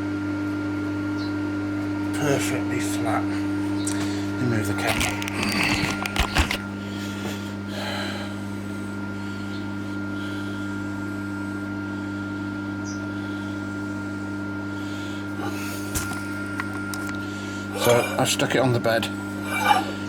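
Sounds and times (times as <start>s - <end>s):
electric machinery hum: 0.0s - 20.0s
soft handling noise: 4.0s - 6.7s.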